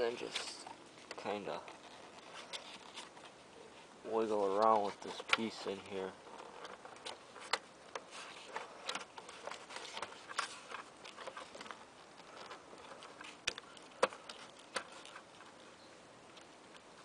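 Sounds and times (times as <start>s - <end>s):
plastic panel clicks and scrapes: 4.5s - 15.7s.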